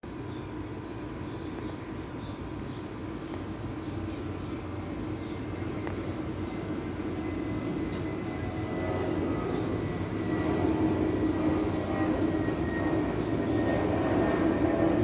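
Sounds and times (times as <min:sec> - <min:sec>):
jet engines running up: 0:03.0 - 0:15.0.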